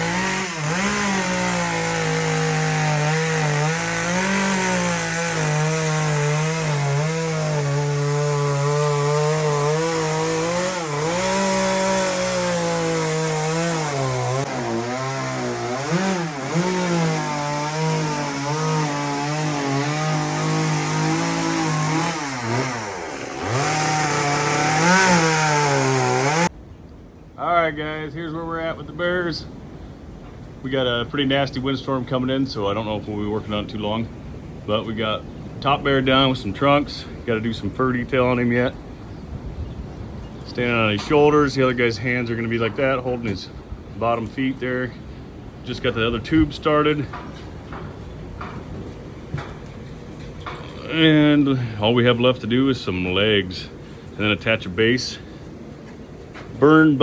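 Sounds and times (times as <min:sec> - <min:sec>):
chainsaw carving wood: 0:00.0 - 0:26.5.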